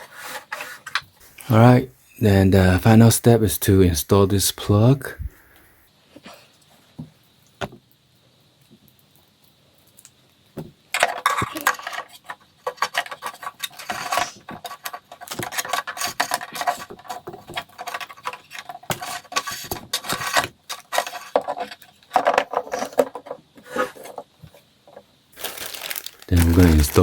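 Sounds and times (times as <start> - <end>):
small hard parts clinking: 24.9 - 27.0.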